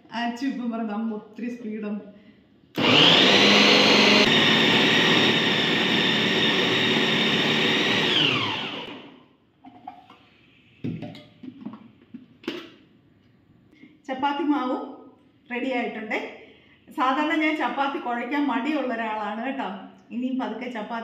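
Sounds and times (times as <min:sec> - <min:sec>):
mixer grinder motor whining: 0:02.8 - 0:09.2.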